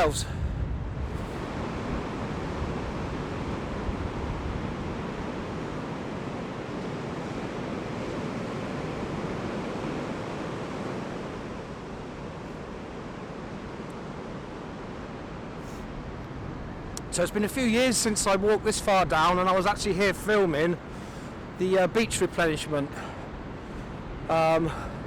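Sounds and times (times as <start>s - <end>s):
wind buffeting microphone: 0.0s - 21.6s
surf washing onto sand: 1.0s - 25.0s.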